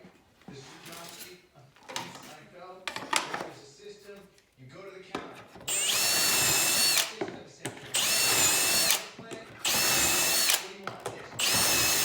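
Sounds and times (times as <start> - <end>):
power drill whining: 5.7 - 7.2, 7.9 - 10.8, 11.4 - 12.0.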